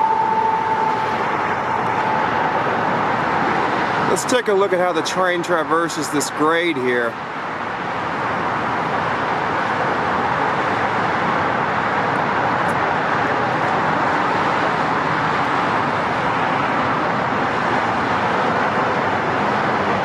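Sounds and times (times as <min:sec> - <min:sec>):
light rail train running: 0:00.0 - 0:04.2.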